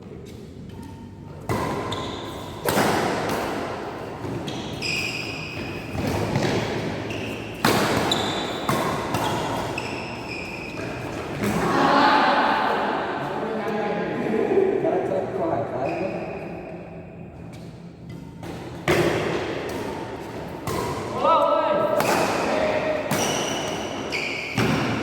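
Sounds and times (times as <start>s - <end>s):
shoes squeaking on court floor: 0.1s - 2.8s, 4.2s - 11.5s, 15.7s - 16.8s, 22.0s - 25.0s
racket hitting shuttlecock: 1.4s - 10.1s, 18.0s - 21.2s, 21.9s - 25.0s.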